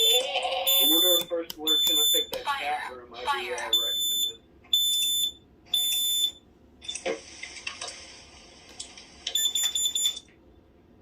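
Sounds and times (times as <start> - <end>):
shrill alarm beeps: 0.0 - 2.4, 3.7 - 6.4, 9.4 - 10.2
recorded voice message: 0.0 - 4.4
rapid short beeps: 0.7 - 2.4.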